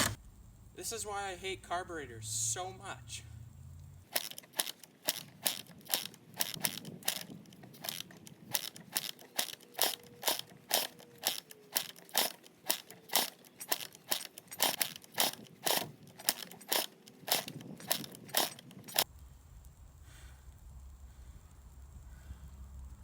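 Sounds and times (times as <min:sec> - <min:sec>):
crunching footsteps: 0:04.1 - 0:19.0.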